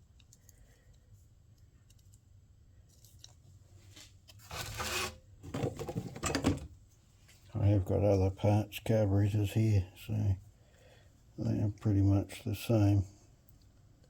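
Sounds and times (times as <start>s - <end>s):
loud scraping rasp: 4.5s - 5.2s.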